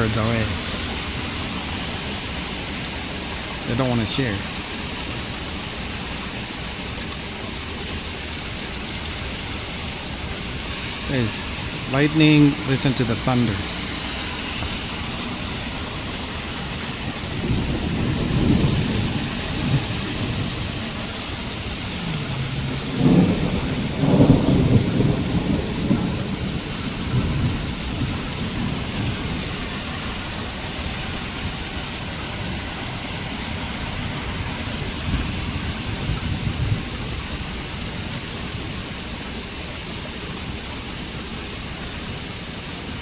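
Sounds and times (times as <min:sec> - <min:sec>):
heavy rain: 0:00.0 - 0:43.0
thunder rumbling: 0:08.8 - 0:37.8.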